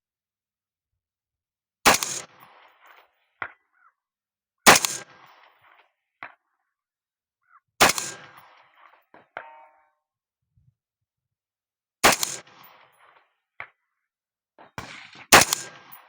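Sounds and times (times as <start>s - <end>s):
rifle shots: 1.9s - 2.9s, 4.7s - 5.6s, 7.8s - 8.9s, 12.0s - 12.9s, 14.8s - 16.0s
bullet striking steel target: 4.7s - 5.1s, 7.8s - 8.6s, 9.3s - 9.9s, 14.8s - 16.0s.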